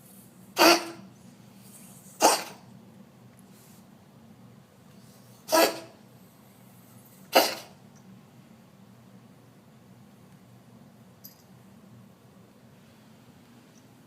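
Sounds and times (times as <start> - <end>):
cat coughing: 0.6 - 1.1, 2.2 - 2.7, 5.5 - 6.0, 7.3 - 7.8.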